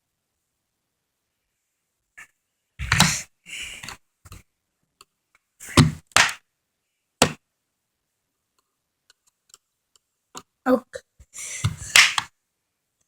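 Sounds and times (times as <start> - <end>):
plastic clips popping: 11.8 - 12.3.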